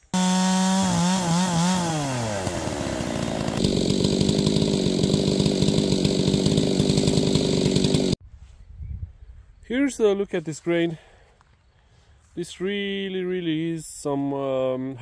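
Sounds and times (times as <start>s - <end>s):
chainsaw cutting a log: 0.1s - 8.2s.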